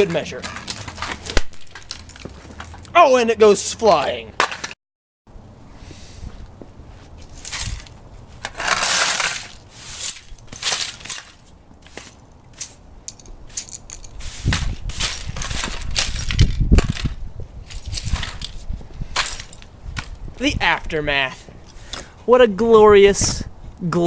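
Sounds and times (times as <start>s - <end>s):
crunching and scraping: 0.0s - 4.8s, 6.1s - 20.4s.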